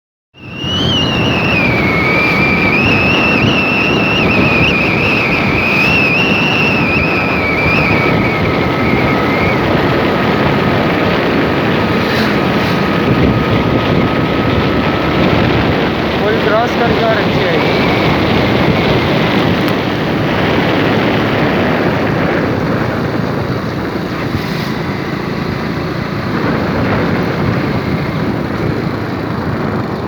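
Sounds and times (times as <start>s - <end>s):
motorcycle riding: 0.3s - 30.0s
wind noise on microphone: 0.3s - 30.0s
wavering high whine: 0.4s - 20.7s.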